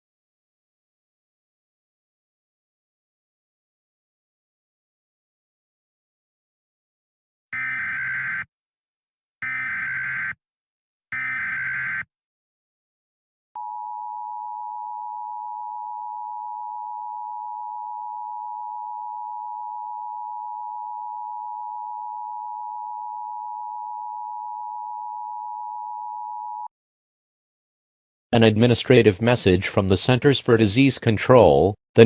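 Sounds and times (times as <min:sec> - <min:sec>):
electronic data screech: 0:07.6 - 0:08.5, 0:09.4 - 0:10.4, 0:11.2 - 0:12.1
two-tone attention signal: 0:11.2 - 0:12.1.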